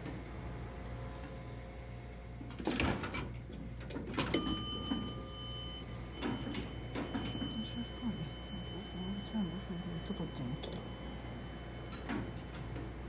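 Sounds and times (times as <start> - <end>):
elevator chime ding: 4.3 - 13.0.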